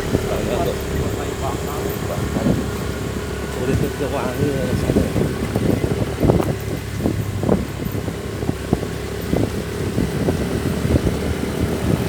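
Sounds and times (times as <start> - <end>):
knocks and rattles: 0.0 - 8.3
vehicle engine running: 0.0 - 12.0
wind noise on microphone: 0.0 - 12.0.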